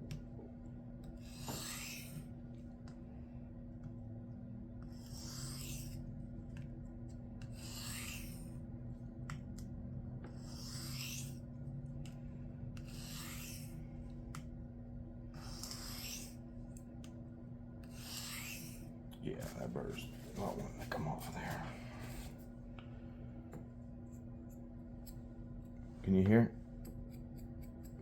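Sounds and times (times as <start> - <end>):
knife scraping sharpening stone: 1.2 - 2.2, 7.5 - 8.5, 10.4 - 11.4, 12.8 - 13.7, 15.4 - 16.4, 17.9 - 18.8.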